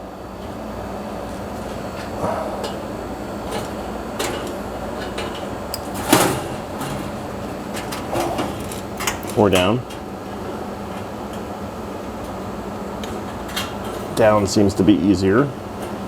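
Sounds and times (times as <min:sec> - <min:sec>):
metal clank: 0:01.6 - 0:10.1.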